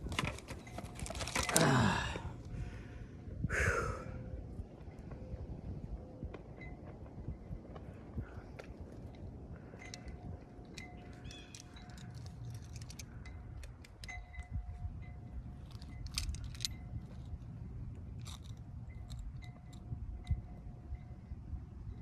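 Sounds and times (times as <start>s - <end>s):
handling clicks and rattles: 0.0s - 2.1s, 8.6s - 20.4s
wind blowing on microphone: 0.0s - 12.1s, 13.0s - 22.0s.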